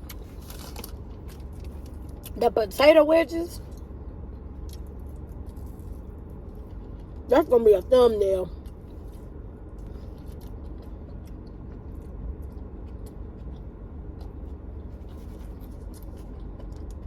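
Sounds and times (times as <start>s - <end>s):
low hum inside car: 0.0s - 17.0s
food packaging rustling: 0.1s - 2.0s.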